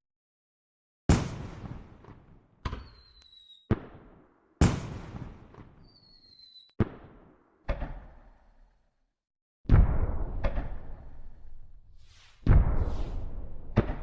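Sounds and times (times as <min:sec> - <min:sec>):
fireworks banging and crackling: 0:01.1 - 0:08.2, 0:12.4 - 0:14.0
falling whistle of rocket: 0:02.8 - 0:03.7, 0:05.8 - 0:06.8.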